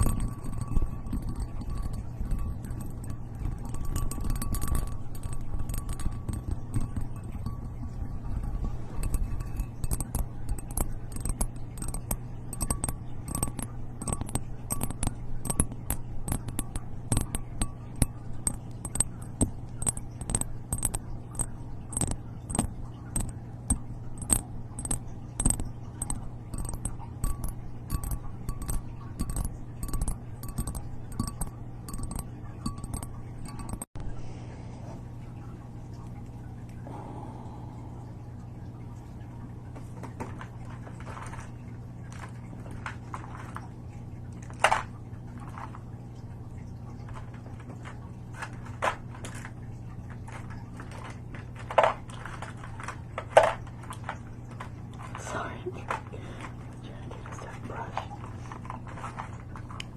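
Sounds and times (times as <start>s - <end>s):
low hum: 0.0s - 59.9s.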